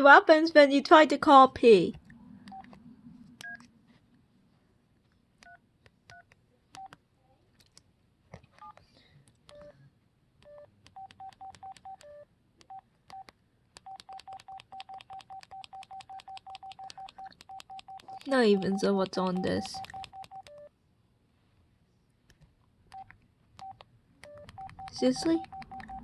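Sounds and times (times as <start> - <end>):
cellphone keypad beeps: 10.4 - 20.7, 22.9 - 26.0.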